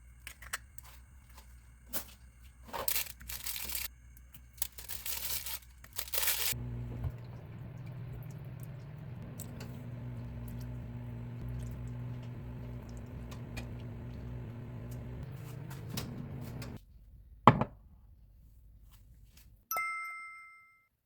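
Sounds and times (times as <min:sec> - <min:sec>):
microwave oven humming: 0:06.0 - 0:16.8.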